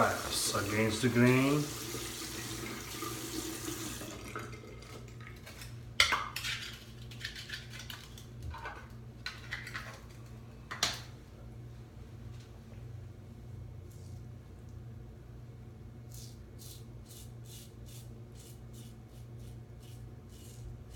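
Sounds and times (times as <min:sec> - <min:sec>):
water running from a tap: 0:00.0 - 0:04.8
razor scraping strokes: 0:16.1 - 0:20.9.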